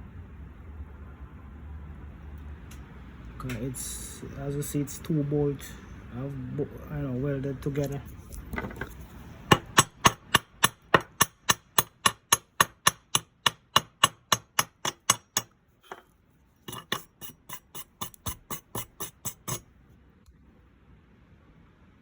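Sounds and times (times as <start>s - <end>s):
rapid metal-on-metal knocks: 9.5s - 16.0s, 16.7s - 19.6s.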